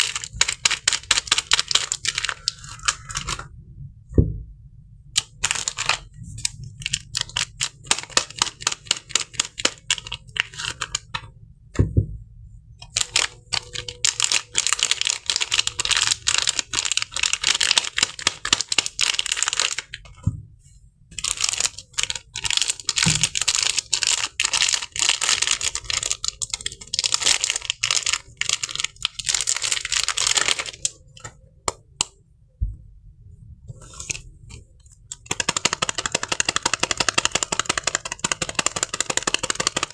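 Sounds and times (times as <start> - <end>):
paper wrapping crinkling and tearing: 0.0 - 3.5, 5.2 - 11.1, 12.9 - 20.0, 21.2 - 31.0, 35.2 - 39.9
soft low thuds: 3.6 - 5.0, 11.6 - 12.6, 32.6 - 33.7.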